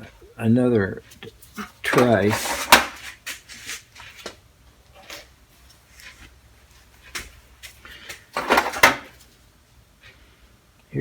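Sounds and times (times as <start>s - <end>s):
metal hand tools clattering: 1.6s - 3.0s, 8.4s - 9.2s.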